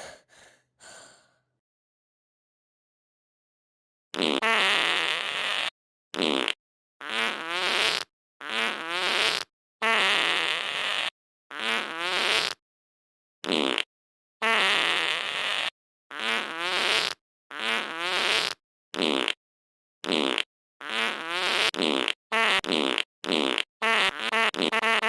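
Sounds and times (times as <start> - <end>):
parrot making raspy fart noises: 4.2 - 12.6, 13.4 - 19.4, 20.0 - 25.0.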